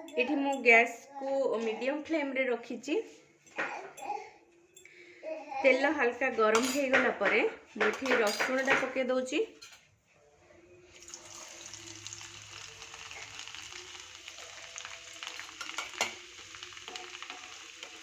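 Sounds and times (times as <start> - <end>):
garlic sizzling in oil: 11.0 - 18.0.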